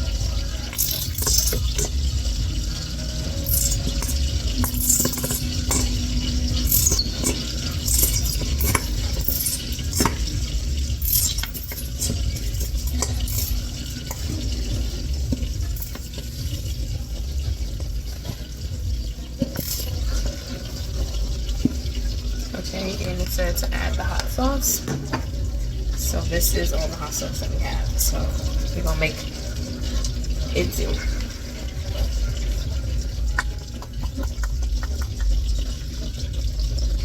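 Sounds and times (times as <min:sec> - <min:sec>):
spoon stirring in a bowl: 0:00.0 - 0:37.0
steady low rumble: 0:00.0 - 0:37.0
spoon clicking against bowl: 0:00.8 - 0:01.9, 0:03.4 - 0:06.0, 0:06.6 - 0:10.3, 0:11.0 - 0:14.3.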